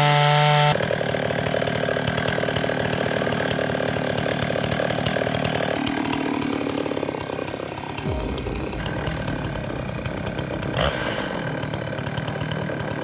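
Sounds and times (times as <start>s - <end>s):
machine engine pulsing: 3.9s - 13.0s.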